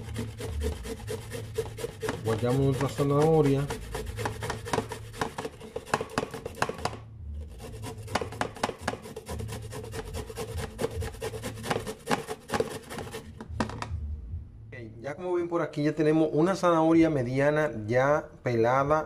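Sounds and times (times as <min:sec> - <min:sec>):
carrot grated on a grater: 0:00.0 - 0:13.5.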